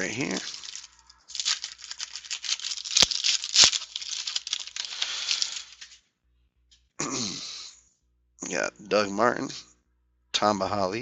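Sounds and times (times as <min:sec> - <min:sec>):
card pack crinkling and rustling: 0:00.0 - 0:06.0.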